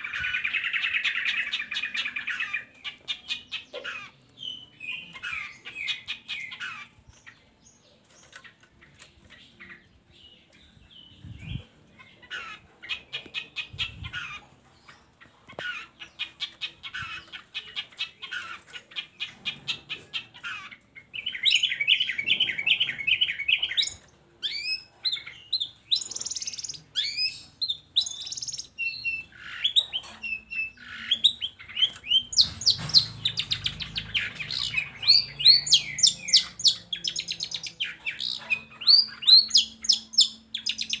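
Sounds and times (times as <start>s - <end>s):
shrike chattering song: 15.6s - 41.0s.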